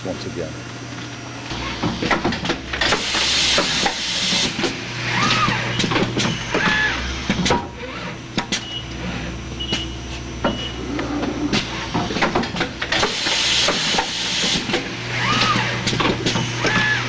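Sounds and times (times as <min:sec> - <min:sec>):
machine hum: 0:00.0 - 0:17.0
air hiss bursts: 0:02.8 - 0:04.6, 0:12.9 - 0:14.7
pneumatic tooling clicking: 0:12.5 - 0:17.0.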